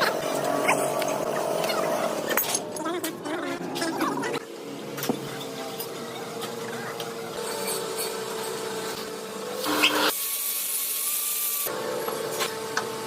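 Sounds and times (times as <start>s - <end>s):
tools scraping metal: 7.4s - 8.6s.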